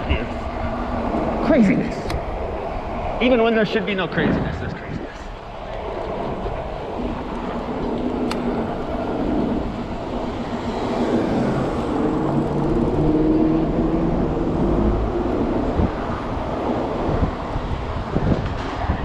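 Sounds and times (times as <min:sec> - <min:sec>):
wind rush on microphone: 0:00.0 - 0:19.0
vehicle engine running: 0:07.4 - 0:15.9.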